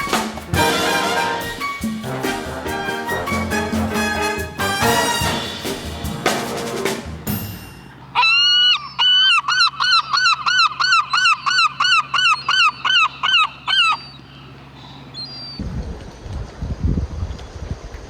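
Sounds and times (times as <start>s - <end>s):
bird honking calls: 8.0s - 15.6s.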